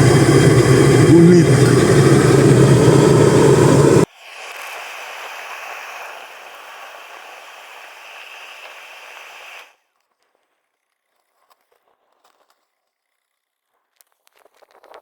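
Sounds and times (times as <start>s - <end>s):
steady rushing hiss: 0.0s - 9.7s.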